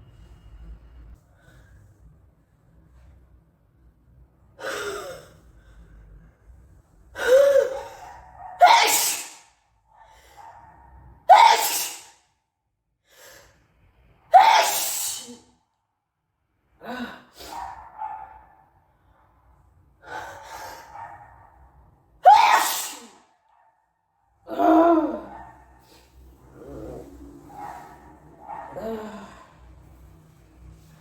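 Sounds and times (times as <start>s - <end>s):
person sneezing: 8.6s - 9.5s, 11.3s - 12.2s, 14.4s - 15.4s, 22.3s - 23.2s.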